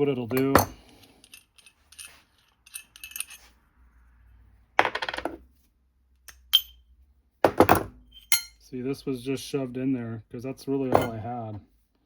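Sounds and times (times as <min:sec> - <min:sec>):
metal drill bits clinking: 0:00.3 - 0:03.6.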